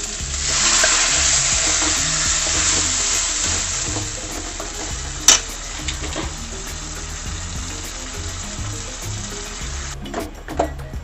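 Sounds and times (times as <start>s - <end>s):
tomato paste sizzling in oil: 0.0s - 10.4s.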